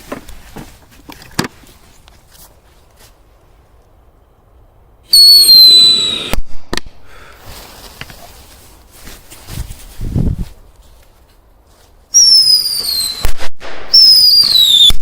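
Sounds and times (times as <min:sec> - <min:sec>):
firework whistle shriek: 0:05.1 - 0:06.4, 0:12.1 - 0:15.0
firework bangs: 0:12.2 - 0:15.0
firework crackling: 0:12.2 - 0:15.0.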